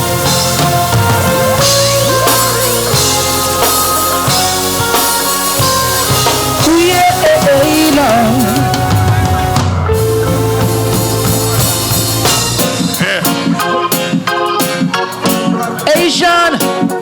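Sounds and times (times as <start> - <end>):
heavy bass line: 0.0 - 13.6
drum kit: 0.0 - 17.0
live reggae band: 0.0 - 17.0.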